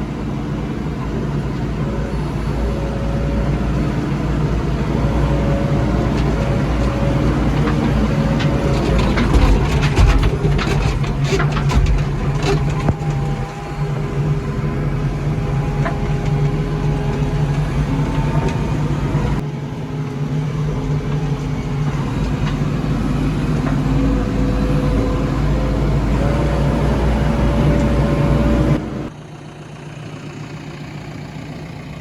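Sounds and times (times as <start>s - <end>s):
diesel engine running: 0.0s - 32.0s
sharp clicks and knocks: 6.0s - 13.8s.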